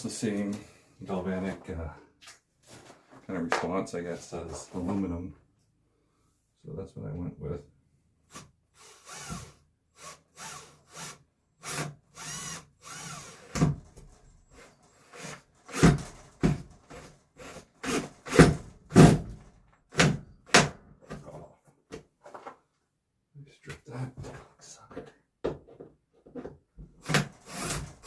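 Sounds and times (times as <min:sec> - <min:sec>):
power drill driving screws into wood: 0:08.3 - 0:20.8, 0:27.0 - 0:28.0.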